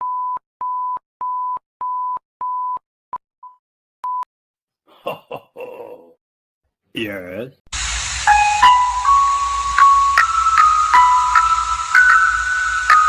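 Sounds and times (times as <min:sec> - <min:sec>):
burst of noise: 0:07.8 - 0:13.0.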